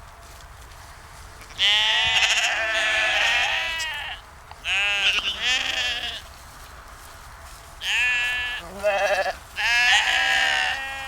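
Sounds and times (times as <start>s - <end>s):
sheep bleating: 1.5s - 6.2s, 7.8s - 11.0s.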